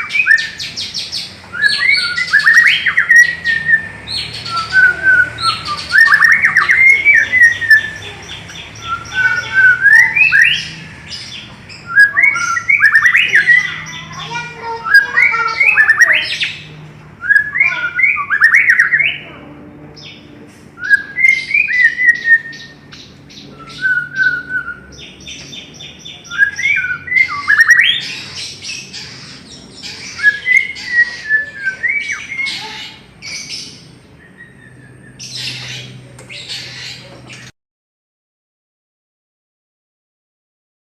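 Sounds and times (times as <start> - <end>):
bird singing whistles and rattles: 0.0 - 8.1, 30.0 - 32.7.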